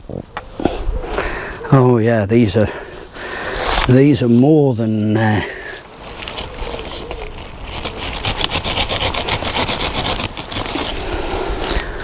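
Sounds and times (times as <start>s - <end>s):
leaves rustling and crackling: 3.3s - 12.0s.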